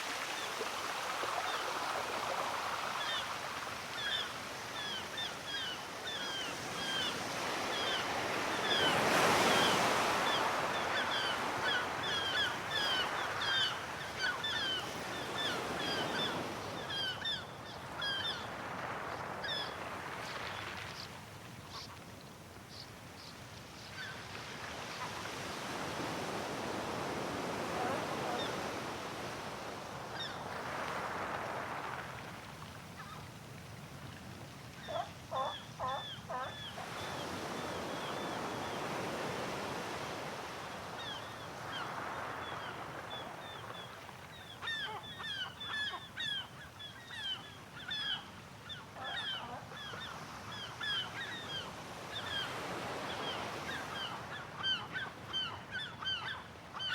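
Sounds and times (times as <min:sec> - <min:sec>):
sea waves washing ashore: 0:00.0 - 0:22.5, 0:24.2 - 0:55.4
seagulls calling: 0:34.8 - 0:37.6.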